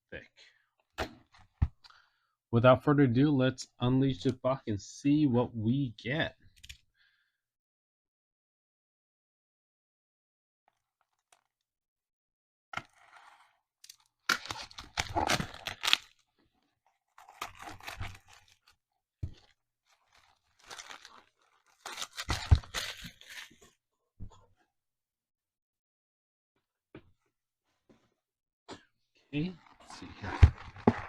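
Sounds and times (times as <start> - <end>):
packaging tearing and crunching: 13.9 - 16.3, 17.0 - 18.7, 19.4 - 23.6.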